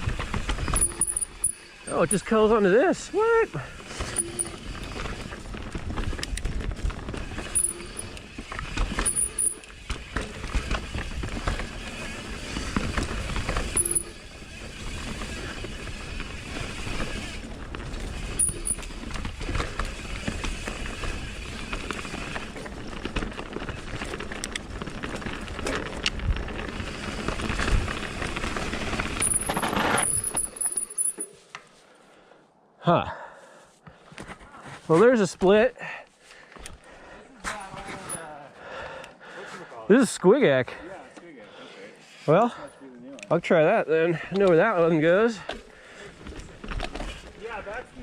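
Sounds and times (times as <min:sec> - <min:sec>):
bike knocking and rattling: 0:00.0 - 0:02.4, 0:03.6 - 0:31.3, 0:45.3 - 0:48.0
bike tyres rolling on dirt: 0:00.0 - 0:32.3, 0:43.4 - 0:48.0.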